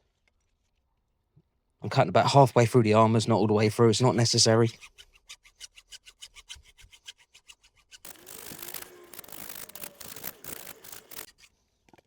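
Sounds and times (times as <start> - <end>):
hacksaw cutting steel wire: 4.8 - 11.6.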